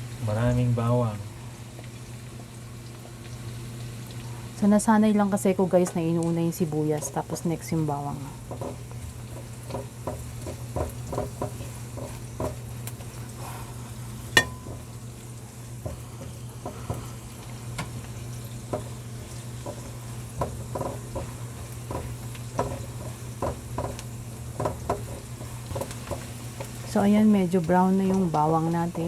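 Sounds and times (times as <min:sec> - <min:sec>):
onion and garlic sizzling in oil: 0:00.0 - 0:29.0
steady low hum: 0:04.1 - 0:29.0
spatula scraping and tapping pan: 0:06.9 - 0:07.4, 0:08.4 - 0:13.3, 0:14.3 - 0:15.0, 0:15.8 - 0:27.0.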